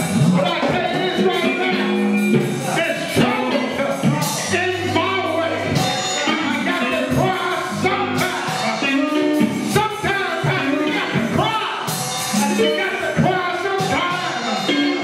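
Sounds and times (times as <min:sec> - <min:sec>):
band with drums and cymbals: 0:00.0 - 0:15.0
person singing: 0:00.0 - 0:15.0.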